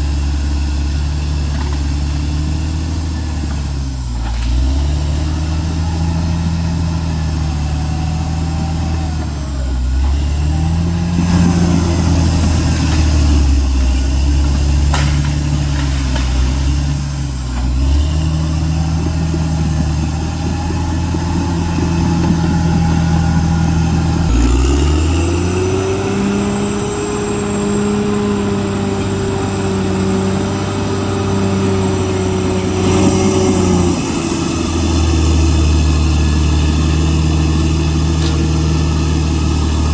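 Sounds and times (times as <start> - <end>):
bulldozer diesel engine working: 0.0 - 39.9.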